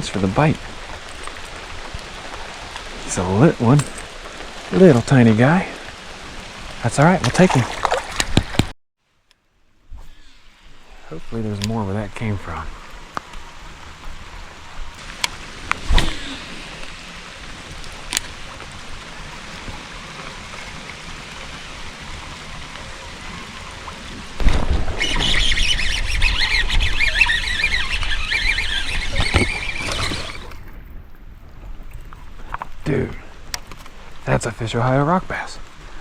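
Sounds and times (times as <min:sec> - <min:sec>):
creek running: 0:00.0 - 0:08.7, 0:10.4 - 0:36.0
fish splashing at surface: 0:07.2 - 0:08.7.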